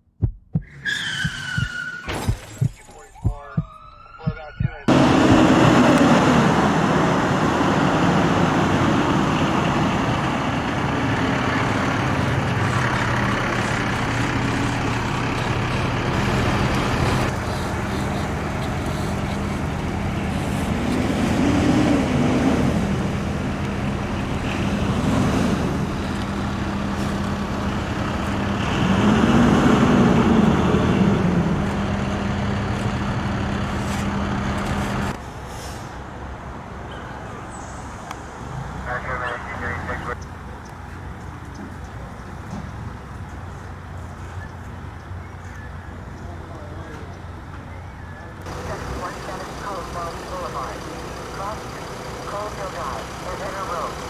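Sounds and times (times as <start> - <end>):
traffic noise: 0.6 - 54.0
heavy vehicle engine running: 4.8 - 54.0.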